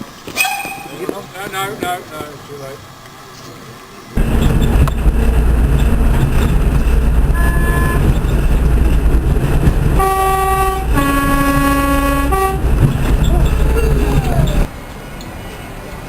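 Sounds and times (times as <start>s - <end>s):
locomotive horn: 4.2s - 14.7s
steady low rumble: 4.2s - 14.7s.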